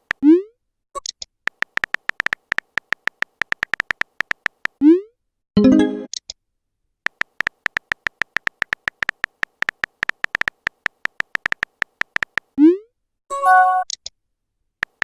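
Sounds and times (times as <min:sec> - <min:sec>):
phone keyboard typing ticks: 0:00.0 - 0:00.3, 0:01.0 - 0:04.8, 0:07.0 - 0:12.6, 0:14.8 - 0:15.0.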